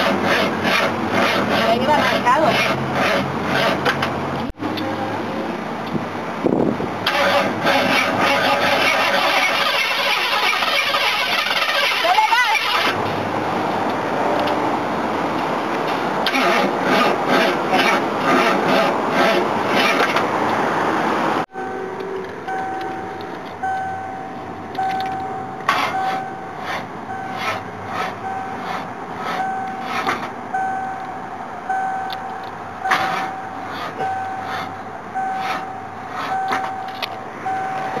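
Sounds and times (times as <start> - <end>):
street noise: 0.0 - 38.0
electronic warning beep: 21.5 - 27.6, 30.5 - 38.0.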